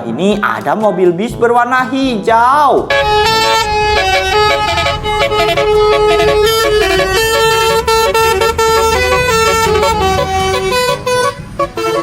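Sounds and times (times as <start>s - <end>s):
multi-tone bus horn tune: 2.9s - 12.0s.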